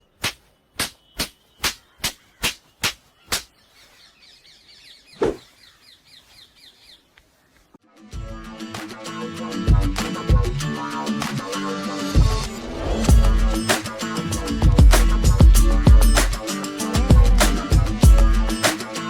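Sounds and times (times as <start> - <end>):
bird chirping: 0.0 - 7.8
music: 7.8 - 19.0.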